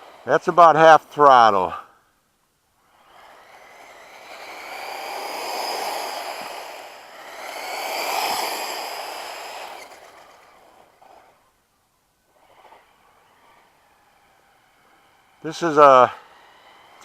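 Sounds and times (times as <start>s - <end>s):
toy car electric motor whining: 2.8s - 11.6s, 12.3s - 17.0s.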